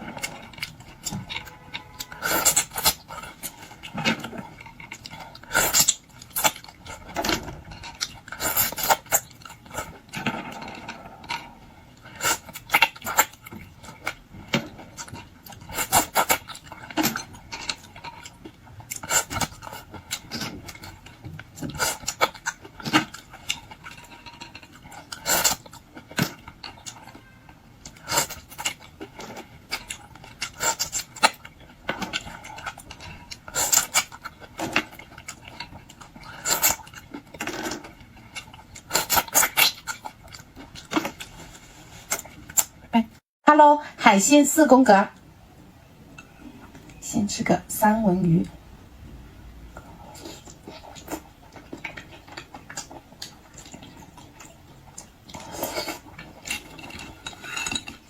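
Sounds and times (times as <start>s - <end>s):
crunching and cracking seafood shells: 0.0s - 42.9s, 50.2s - 58.0s
cutlery clinking on dishes: 56.4s - 58.0s.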